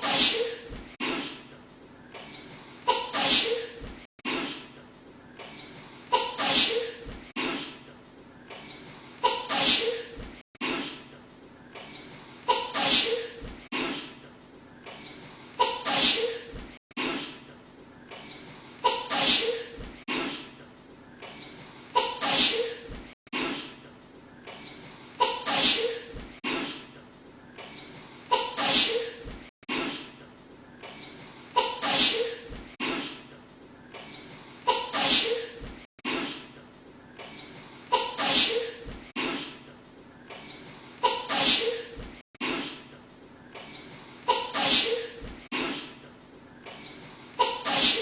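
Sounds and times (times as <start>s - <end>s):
woman sneezing: 0.0s - 1.5s, 2.9s - 4.8s, 6.1s - 7.8s, 9.2s - 11.1s, 12.5s - 14.2s, 15.6s - 17.4s, 18.8s - 20.5s, 22.0s - 23.8s, 25.2s - 26.9s, 28.3s - 30.2s, 31.6s - 33.3s, 34.7s - 36.5s, 37.9s - 39.6s, 41.0s - 42.9s, 44.3s - 46.0s, 47.4s - 48.0s.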